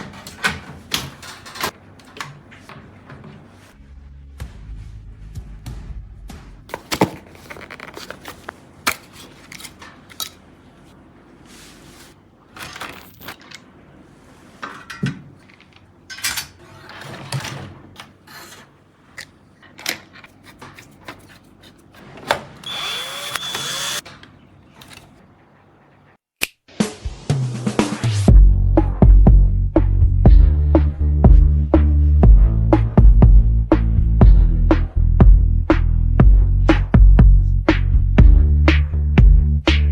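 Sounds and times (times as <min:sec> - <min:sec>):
electric screwdriver running: 0:22.6 - 0:24.0.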